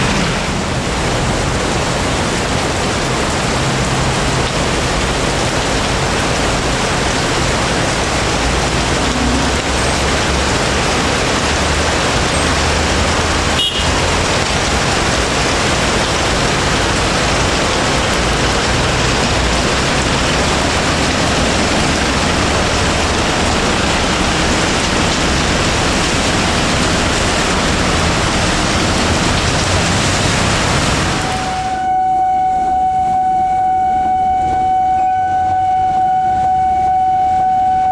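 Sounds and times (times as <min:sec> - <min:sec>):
low rumble: 0:00.0 - 0:03.0
heavy rain pouring: 0:00.0 - 0:37.9.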